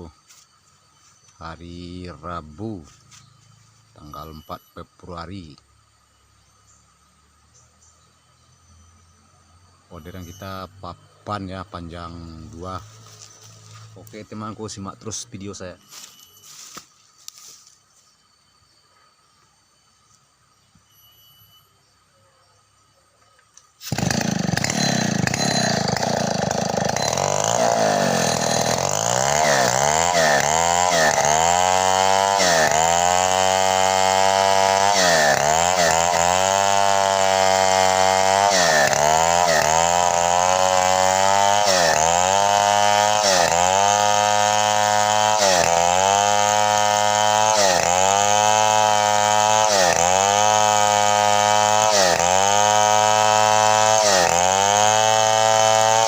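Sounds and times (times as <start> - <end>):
chainsaw ripping a log: 23.8 - 56.0.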